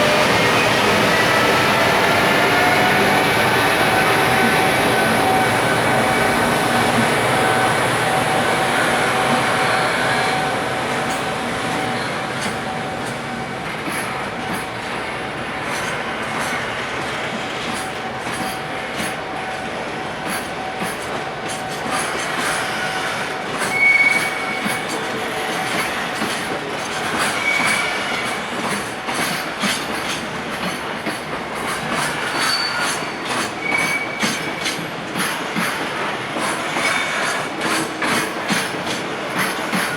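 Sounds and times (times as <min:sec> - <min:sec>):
freight train rumbling: 0:00.0 - 0:39.9
wheels clicking over rail joints: 0:20.2 - 0:39.9
high wheel squeals: 0:21.8 - 0:28.6, 0:32.0 - 0:34.8.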